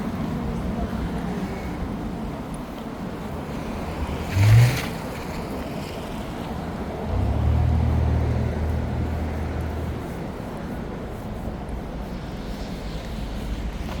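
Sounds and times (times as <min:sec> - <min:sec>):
passing vehicles rushing: 0:00.0 - 0:14.0
low engine rumble: 0:05.0 - 0:14.0.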